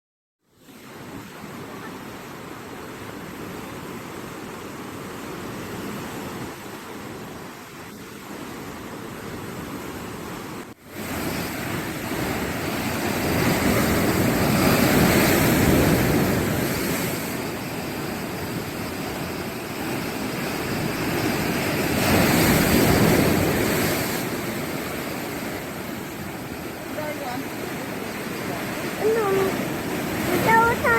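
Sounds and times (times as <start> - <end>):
waves breaking on shore: 0.5 - 30.9.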